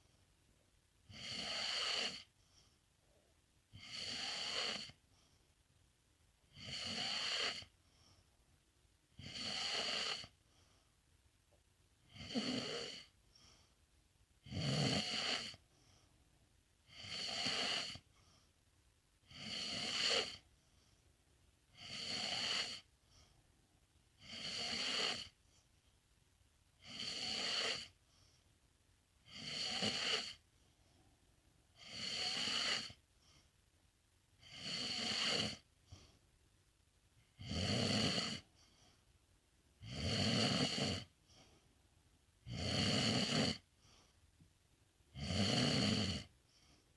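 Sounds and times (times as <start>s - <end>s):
pet snoring: 1.0s - 2.3s, 3.7s - 5.0s, 6.5s - 7.8s, 9.1s - 10.4s, 12.1s - 13.5s, 14.4s - 15.7s, 16.8s - 18.2s, 19.2s - 20.5s, 21.7s - 22.9s, 24.2s - 25.4s, 26.8s - 28.0s, 29.2s - 30.5s, 31.7s - 33.0s, 34.4s - 36.1s, 37.2s - 38.8s, 39.8s - 41.5s, 42.4s - 44.1s, 45.1s - 46.7s.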